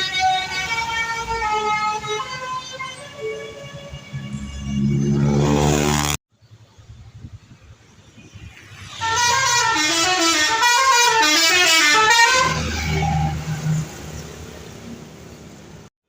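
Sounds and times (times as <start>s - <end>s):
multi-tone bus horn melody: 0.0s - 6.2s, 9.0s - 13.9s.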